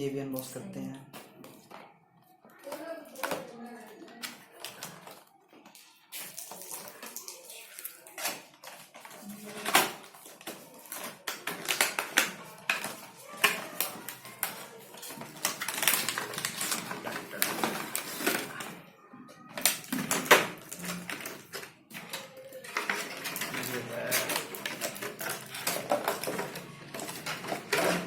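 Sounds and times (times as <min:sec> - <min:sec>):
packaging rustling: 0:01.0 - 0:18.9, 0:19.5 - 0:28.0
packaging clicks and knocks: 0:08.2 - 0:18.9, 0:19.5 - 0:28.0.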